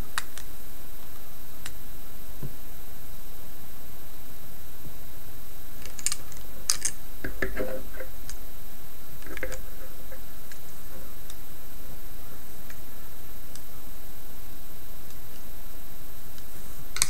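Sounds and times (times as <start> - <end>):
steady background hiss: 0.0 - 17.0
plastic toy parts clicking: 5.8 - 7.0.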